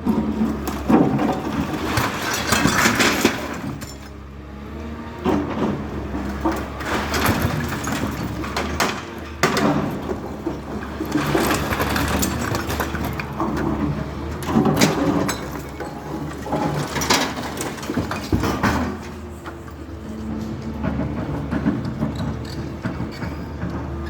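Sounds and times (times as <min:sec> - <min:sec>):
heavy machine engine hum: 0:00.1 - 0:24.0
rubble crunching and crashing: 0:00.2 - 0:04.0, 0:06.6 - 0:19.3.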